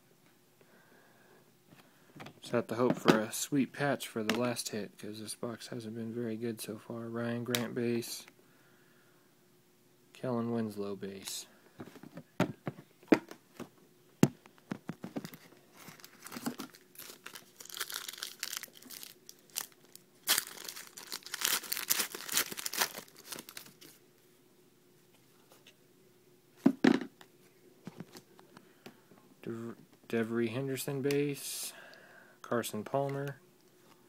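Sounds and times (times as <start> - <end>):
foil wrapper tearing and crinkling: 15.8 - 24.0.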